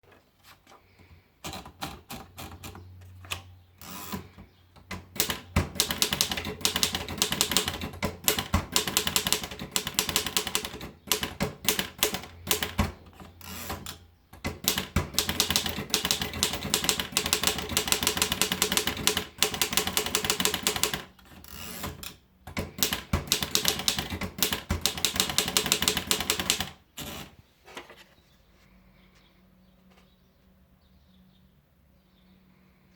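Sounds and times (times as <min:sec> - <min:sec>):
typewriter keys striking: 0:03.9 - 0:27.3.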